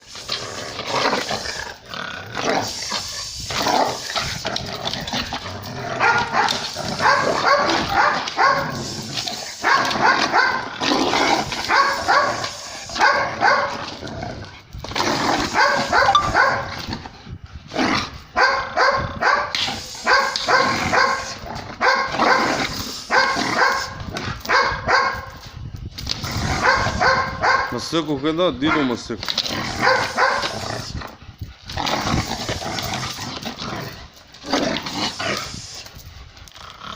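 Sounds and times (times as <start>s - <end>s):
dog barking rapidly: 6.0s - 8.7s, 9.6s - 10.6s, 11.7s - 12.4s, 13.0s - 13.8s, 15.5s - 16.7s, 18.4s - 25.3s, 26.6s - 27.8s, 28.6s - 29.0s, 29.7s - 30.5s.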